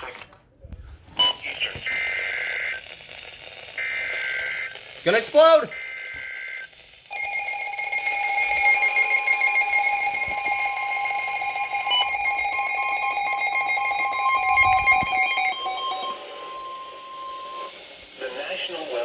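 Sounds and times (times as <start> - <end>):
harsh buzzy alert tones: 7.1 - 17.8.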